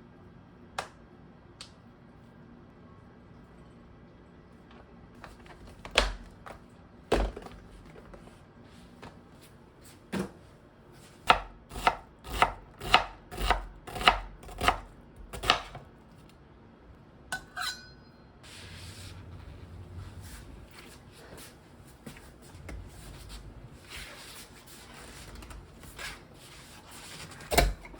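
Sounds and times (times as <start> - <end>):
knife chopping on cutting board: 11.3 - 15.8.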